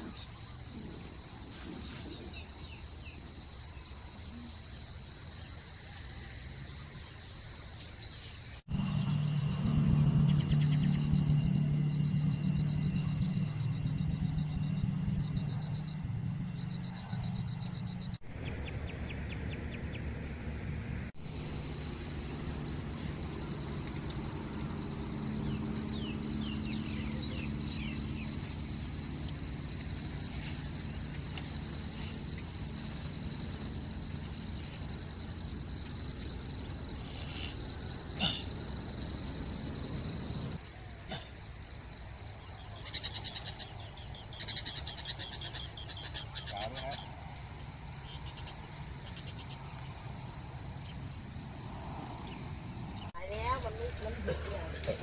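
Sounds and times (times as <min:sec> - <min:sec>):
insects trilling: 0:00.0 - 0:19.5, 0:21.1 - 0:55.0
low steady hum: 0:08.7 - 0:37.5
bird chirps: 0:08.8 - 0:20.1, 0:42.6 - 0:47.1.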